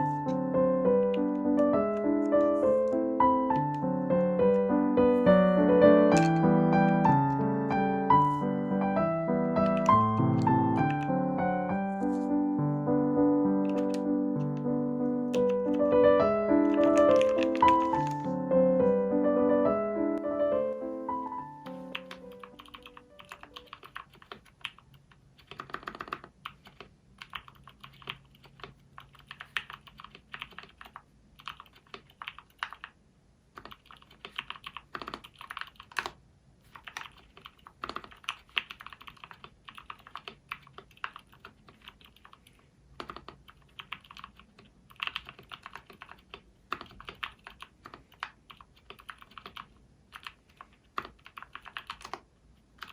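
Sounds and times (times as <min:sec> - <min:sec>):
mechanical keyboard key clacks: 0:06.1 - 0:06.5, 0:13.6 - 0:14.6, 0:16.6 - 0:18.3.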